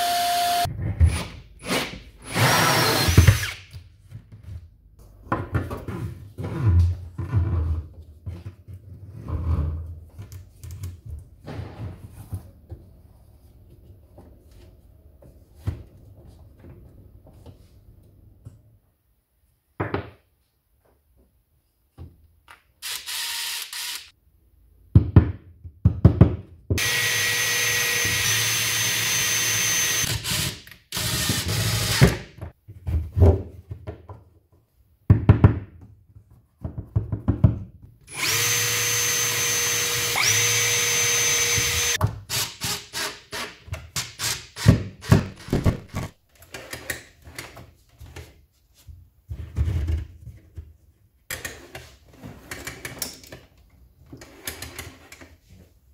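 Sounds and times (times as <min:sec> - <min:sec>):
power drill boring through wood: 0:00.0 - 0:00.7, 0:01.7 - 0:03.6, 0:22.8 - 0:24.1, 0:26.8 - 0:32.2, 0:38.1 - 0:42.8.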